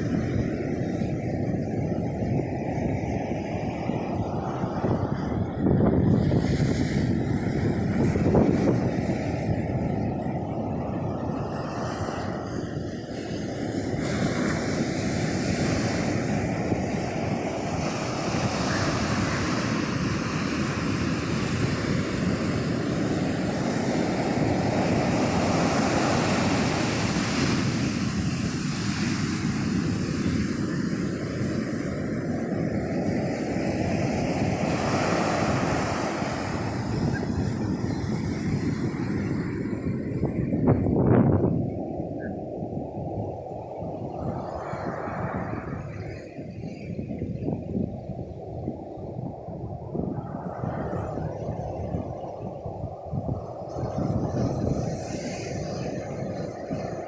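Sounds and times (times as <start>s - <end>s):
waves breaking on a beach: 0.0s - 57.0s
wind buffeting microphone: 0.0s - 57.0s.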